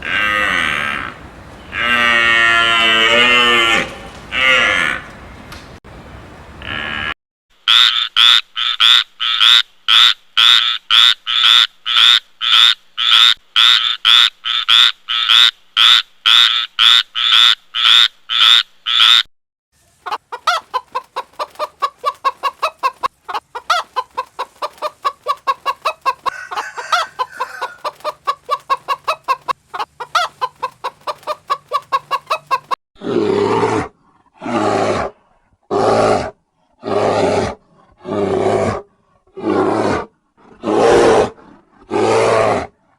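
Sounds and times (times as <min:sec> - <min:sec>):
long harsh animal calls: 0:00.0 - 0:05.1, 0:06.6 - 0:19.3, 0:24.8 - 0:29.4, 0:31.9 - 0:42.8
animal calls: 0:00.0 - 0:05.5, 0:20.0 - 0:42.7.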